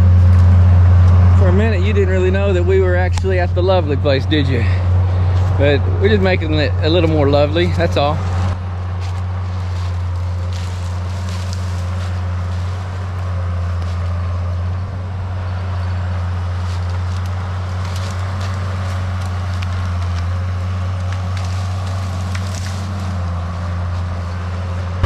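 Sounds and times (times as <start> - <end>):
bulldozer diesel engine droning: 0.0 - 25.0
branches breaking: 7.0 - 25.0.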